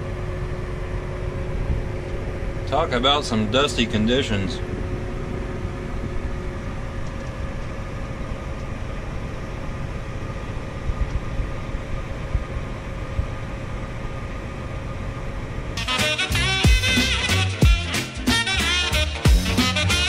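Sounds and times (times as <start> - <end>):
tractor engine droning: 0.0 - 14.3
music: 15.8 - 20.0.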